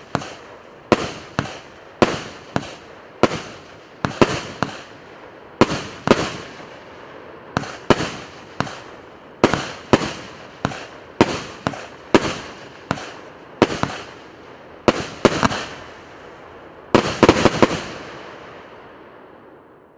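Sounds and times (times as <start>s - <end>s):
fireworks battery firing: 0.0s - 18.7s.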